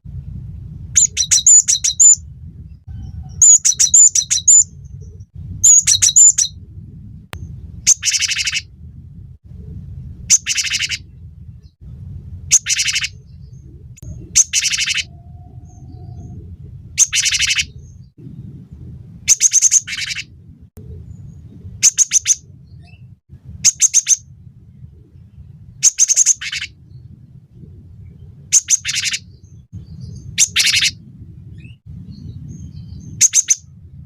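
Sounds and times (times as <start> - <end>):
steady low hum: 0.0 - 34.0
harsh buzzy bird calls: 1.0 - 2.2, 3.0 - 6.5, 7.8 - 8.7, 10.3 - 11.8, 12.5 - 18.1, 19.3 - 20.4, 21.0 - 24.2, 24.8 - 27.1, 28.0 - 31.0, 31.6 - 33.7.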